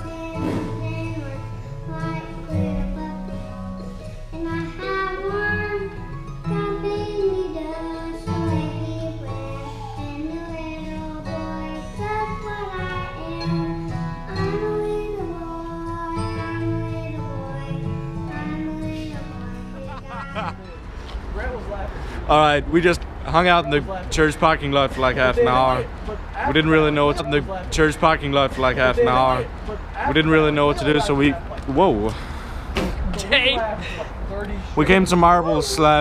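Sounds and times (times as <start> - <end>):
person singing: 0.0 - 3.2, 14.3 - 20.8, 23.3 - 31.4
guitar: 0.0 - 36.0.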